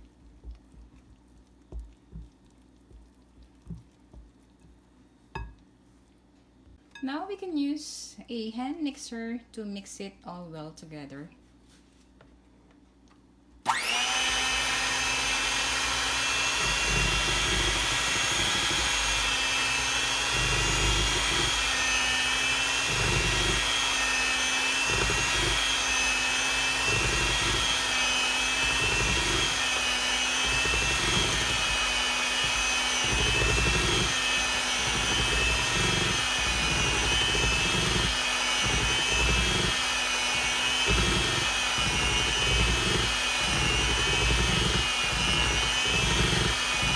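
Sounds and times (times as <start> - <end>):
beaters churning batter in a bowl: 0.0 - 5.5, 13.7 - 46.9
electric hand mixer whining: 13.7 - 46.9.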